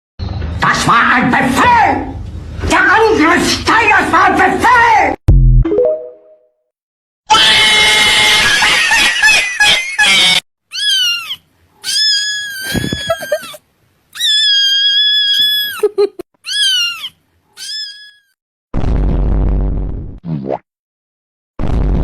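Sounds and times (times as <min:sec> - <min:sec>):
cat meowing: 0:10.7 - 0:13.6, 0:14.2 - 0:15.8, 0:16.4 - 0:18.4.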